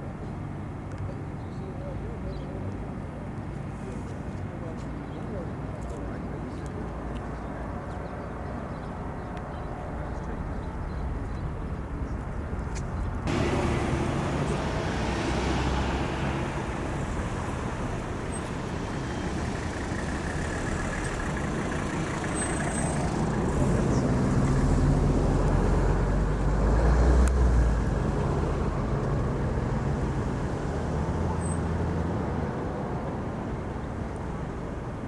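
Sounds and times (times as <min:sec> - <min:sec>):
vehicle engines running: 0:00.0 - 0:34.8
tyre and road noise: 0:00.0 - 0:35.0
vehicle passing with deep rumble: 0:08.5 - 0:34.8.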